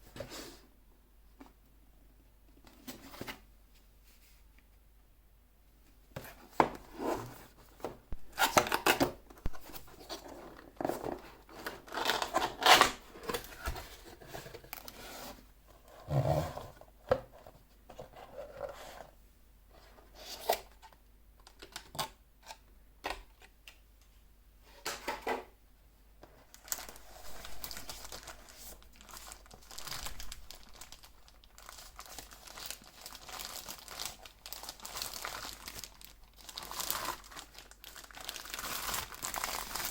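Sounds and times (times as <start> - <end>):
packaging rustling and tearing: 8.2 - 15.2, 26.4 - 39.9.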